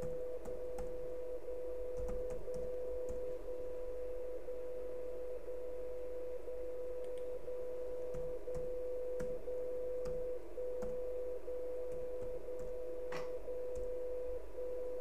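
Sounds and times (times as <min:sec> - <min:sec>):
steady radio time-signal tone: 0:00.2 - 0:15.0
faint clicks: 0:07.0 - 0:07.3.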